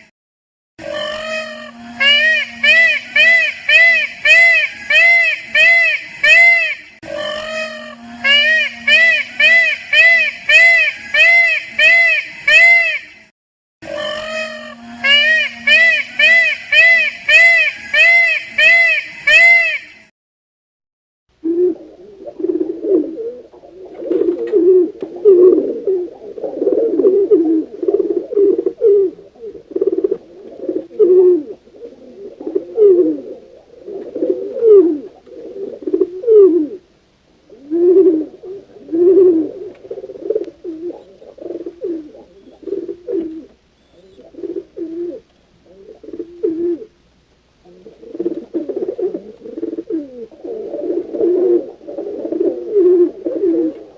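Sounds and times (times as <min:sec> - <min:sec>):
pigeons cooing: 0:00.8 - 0:06.2, 0:07.0 - 0:12.5, 0:21.4 - 0:47.0, 0:47.6 - 0:53.9.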